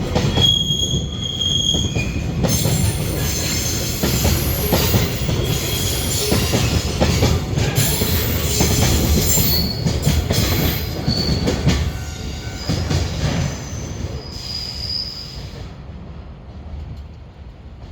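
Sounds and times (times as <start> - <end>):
train wheels clattering over rail joints: 0.0 - 14.5
high wheel squeals: 0.3 - 6.7, 7.8 - 15.6.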